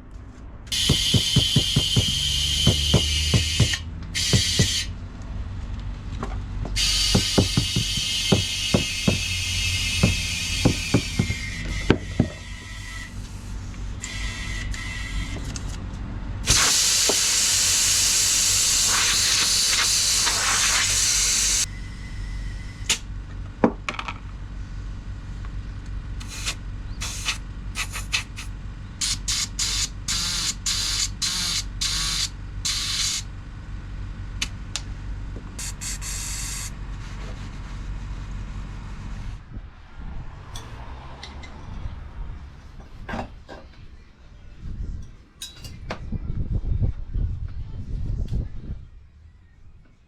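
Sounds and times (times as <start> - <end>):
spraying hiss: 0.7 - 4.9, 6.8 - 11.6, 16.5 - 21.6, 26.2 - 29.9.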